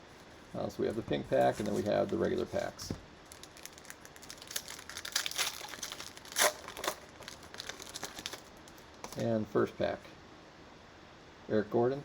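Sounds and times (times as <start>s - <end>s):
cellophane wrapper crinkling and tearing: 1.3s - 9.3s.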